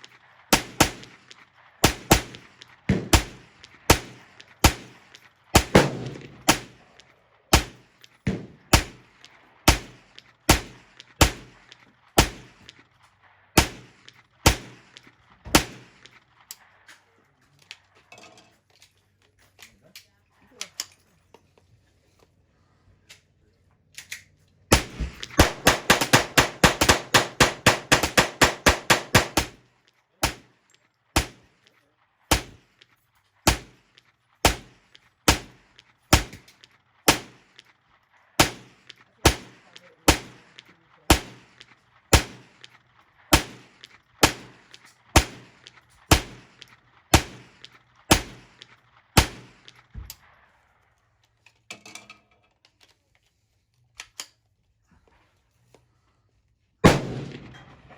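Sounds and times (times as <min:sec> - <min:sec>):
rifle shots: 0:00.0 - 0:17.0, 0:24.7 - 0:50.6, 0:56.8 - 0:57.9.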